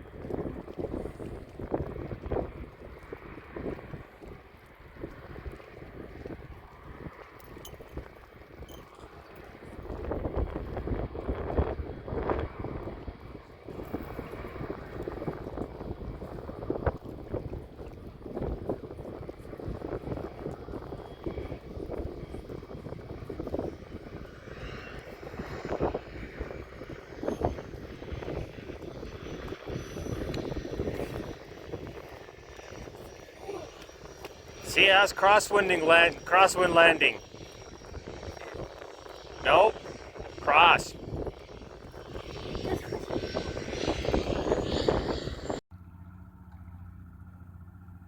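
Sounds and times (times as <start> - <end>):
light aircraft engine droning: 0.0 - 48.0
gusty wind rumble: 9.8 - 35.2, 37.1 - 45.6
wind buffeting: 37.2 - 45.6.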